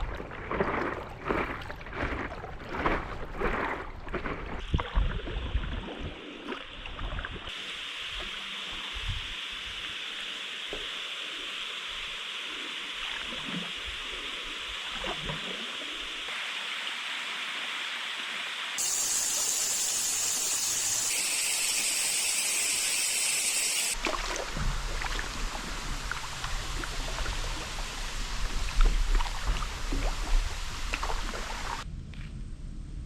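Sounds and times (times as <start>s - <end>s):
water splashes: 0.0s - 16.7s, 18.8s - 31.9s
rushing water: 0.0s - 31.9s
low rumble: 31.8s - 33.0s.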